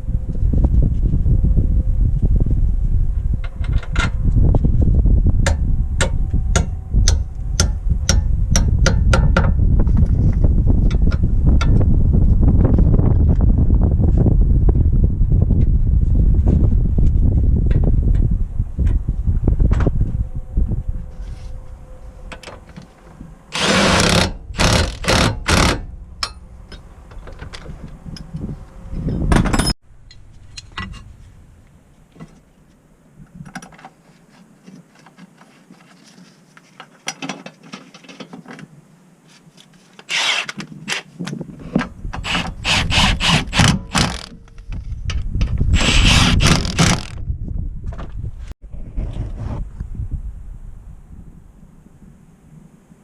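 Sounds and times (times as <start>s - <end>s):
cordless power tool bursts: 23.5s - 25.9s, 40.1s - 40.6s.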